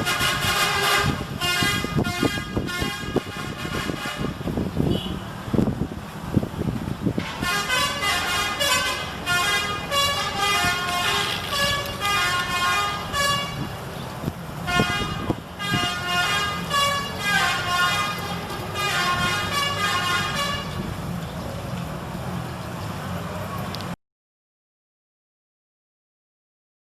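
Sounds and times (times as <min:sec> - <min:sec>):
musical bus air horn tunes: 0:00.0 - 0:05.4, 0:07.1 - 0:13.8, 0:14.6 - 0:20.9.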